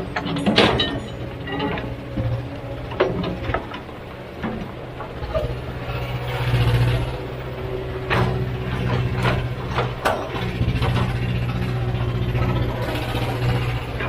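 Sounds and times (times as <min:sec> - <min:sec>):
metallic knocks and clanks: 0:00.0 - 0:07.0, 0:07.9 - 0:14.0
heavy diesel engine droning: 0:00.0 - 0:14.0.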